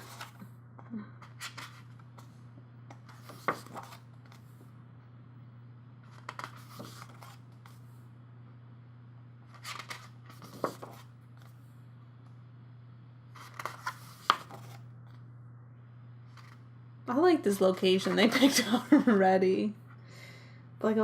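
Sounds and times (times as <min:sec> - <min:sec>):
pages turning with rustles: 0:00.0 - 0:00.4, 0:01.3 - 0:02.3, 0:02.9 - 0:04.5, 0:06.0 - 0:07.8, 0:09.5 - 0:11.6, 0:13.3 - 0:15.2, 0:16.3 - 0:16.6
steady low hum: 0:00.0 - 0:21.0.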